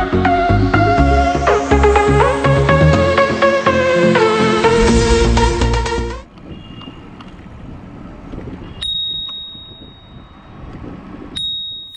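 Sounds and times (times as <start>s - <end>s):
electronic dance music: 0.0s - 6.2s
bicycle bell ding: 8.8s - 10.5s, 11.4s - 11.9s.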